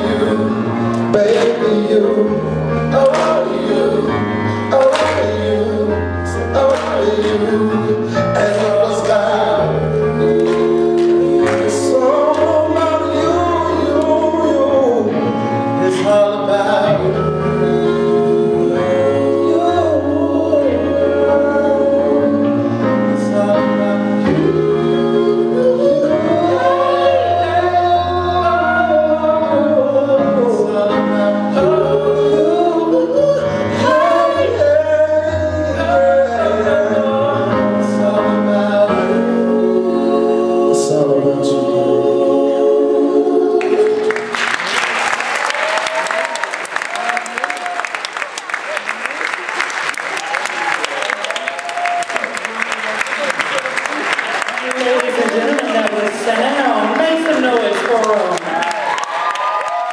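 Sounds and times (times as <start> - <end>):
male and female voices singing: 0.0 - 44.7
band playing gospel song: 0.0 - 59.9.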